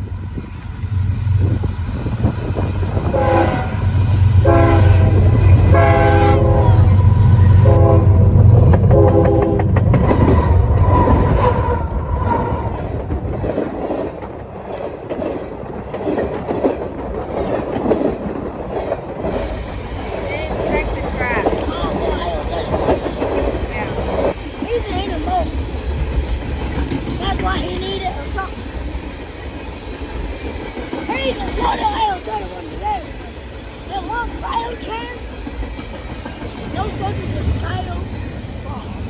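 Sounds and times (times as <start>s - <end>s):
train wheels clacking on rails: 0.0s - 39.0s
locomotive horn: 3.1s - 10.0s.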